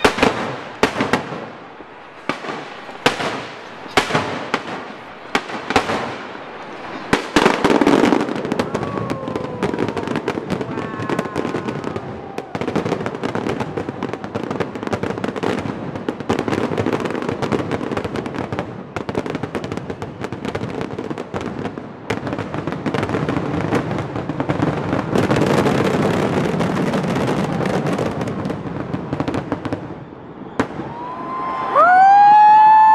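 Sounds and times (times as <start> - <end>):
rising firework whistle: 0.0 - 15.7, 29.3 - 32.9
fireworks bangs and crackles: 0.0 - 32.9.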